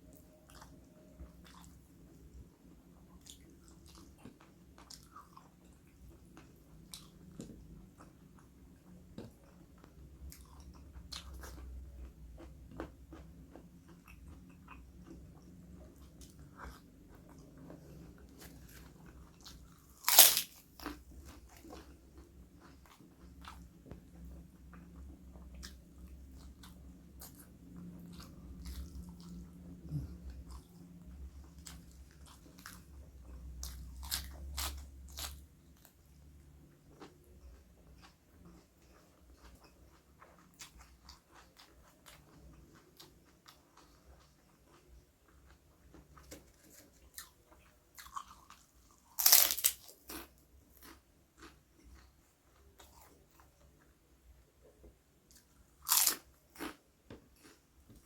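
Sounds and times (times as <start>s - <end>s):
person chewing crunchy food: 10.2s - 35.9s, 36.8s - 53.7s, 55.3s - 58.0s.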